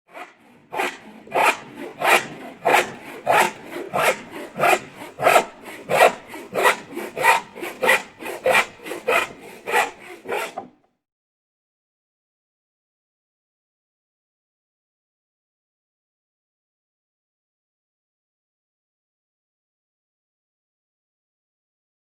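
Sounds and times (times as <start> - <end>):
handsaw cutting wood: 0.1 - 10.8.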